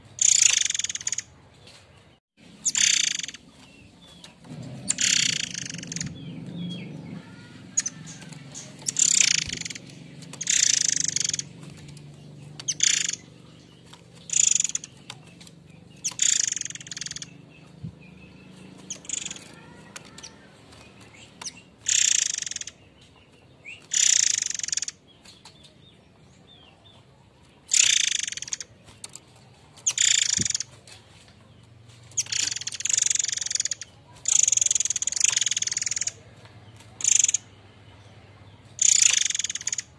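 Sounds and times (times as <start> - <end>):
songbird harsh call: 2.6 - 3.4, 4.5 - 11.5, 12.6 - 13.7, 14.3 - 15.2, 16.0 - 17.5, 18.1 - 20.5, 21.4 - 22.8, 23.8 - 25.0, 27.7 - 28.7, 29.9 - 30.7, 32.2 - 36.2, 38.8 - 39.9.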